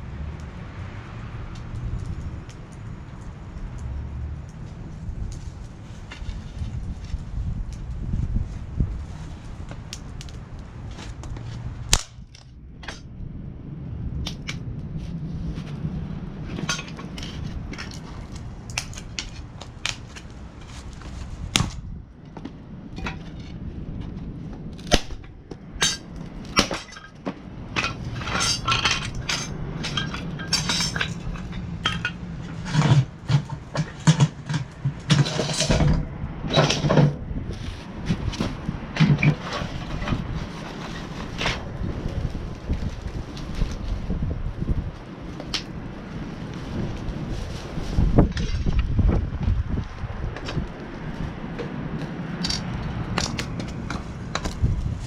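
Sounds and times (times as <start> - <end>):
metal parts clinking and clanking: 16.5 - 18.0, 25.8 - 27.2, 27.8 - 37.2.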